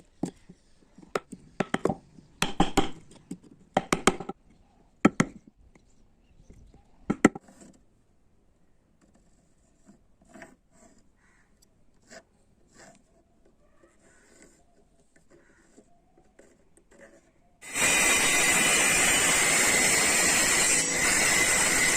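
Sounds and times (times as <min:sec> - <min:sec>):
hand tool scraping wood: 0:09.0 - 0:11.2, 0:12.0 - 0:21.9.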